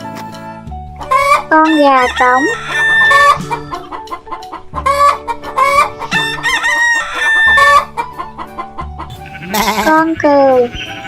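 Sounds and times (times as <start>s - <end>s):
rooster crowing: 2.0s - 3.6s, 6.1s - 7.9s.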